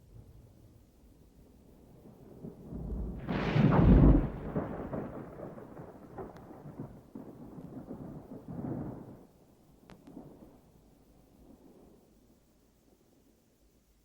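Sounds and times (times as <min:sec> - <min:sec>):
thunder rumbling: 0:00.0 - 0:09.5.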